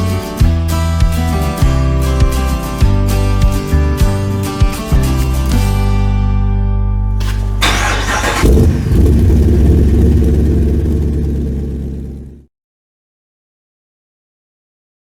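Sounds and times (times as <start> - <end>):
vehicle engine starting and running: 7.2 - 12.5.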